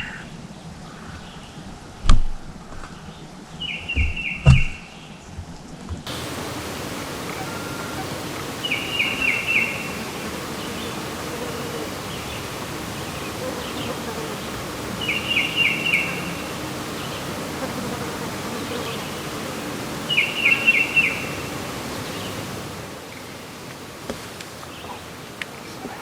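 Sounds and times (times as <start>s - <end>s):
background hiss: 0.0s - 26.0s
songbird singing: 0.0s - 26.0s
sharp knocks: 4.0s - 4.8s.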